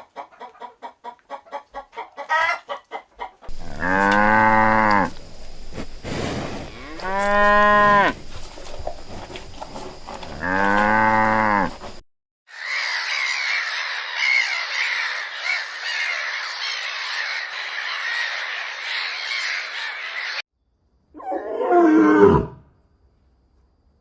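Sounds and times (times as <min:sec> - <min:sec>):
cow mooing: 0:03.5 - 0:05.8, 0:06.6 - 0:09.2, 0:10.0 - 0:12.0
flock of birds squawking: 0:12.5 - 0:20.4.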